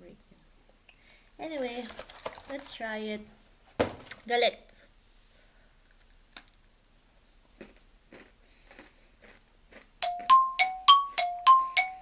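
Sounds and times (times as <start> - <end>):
biscuit crunching: 7.6 - 10.2
ringing chime notes: 10.0 - 12.0.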